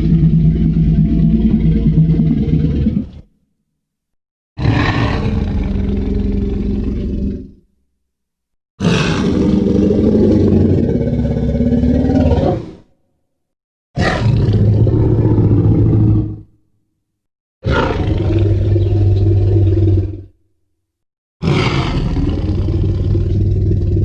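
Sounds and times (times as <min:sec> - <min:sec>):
deep dinosaur roar: 0:04.6 - 0:07.6, 0:08.8 - 0:12.9, 0:14.0 - 0:16.5, 0:17.6 - 0:20.4, 0:21.4 - 0:24.0.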